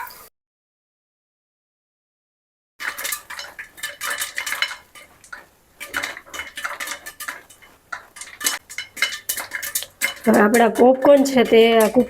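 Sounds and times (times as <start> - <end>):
spoon scraping corn kernels in pot: 2.8 - 12.0.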